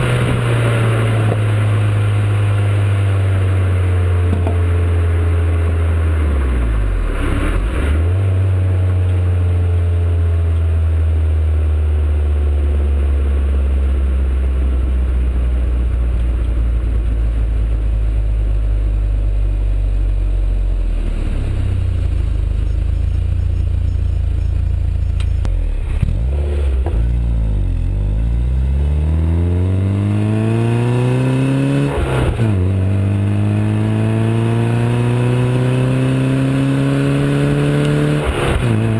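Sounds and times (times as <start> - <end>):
car engine revving: 0.0 - 10.5, 20.8 - 38.9.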